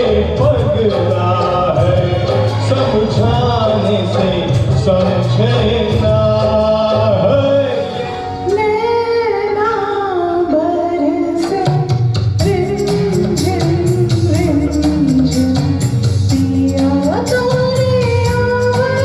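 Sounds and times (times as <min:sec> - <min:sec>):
dense percussion: 0:00.0 - 0:07.4
band playing: 0:00.0 - 0:09.0, 0:11.4 - 0:19.0
person singing: 0:00.0 - 0:19.0.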